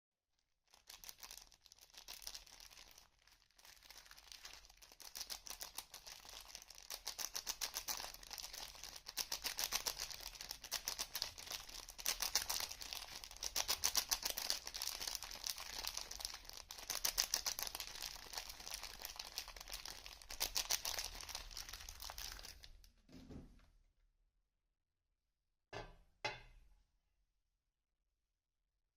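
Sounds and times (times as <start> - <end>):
soap wrapper crinkling and tearing: 0.4 - 22.9.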